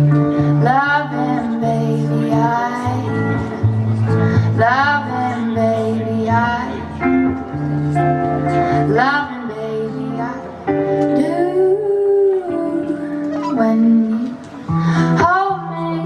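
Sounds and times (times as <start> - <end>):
woman singing with vibrato: 0.0 - 3.5, 4.4 - 7.0, 8.6 - 16.0
plucked guitar chords: 0.0 - 16.0.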